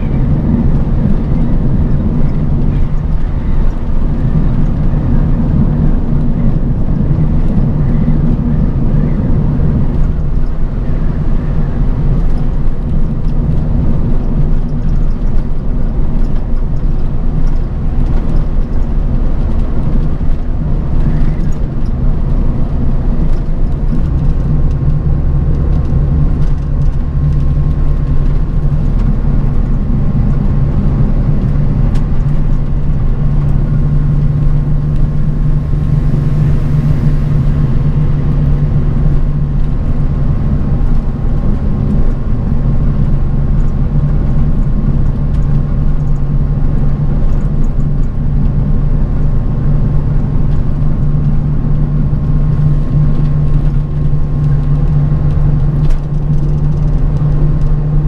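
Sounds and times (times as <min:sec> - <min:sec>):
bus engine drone: 0:00.0 - 0:58.0
road rumble: 0:00.0 - 0:58.0
faint steady whine: 0:17.6 - 0:43.6.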